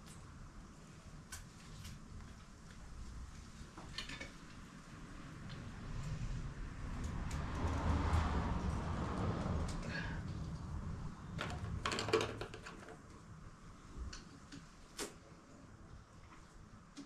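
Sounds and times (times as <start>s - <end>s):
low rumble: 5.6s - 11.9s
hand tools clicking and knocking: 11.4s - 13.1s.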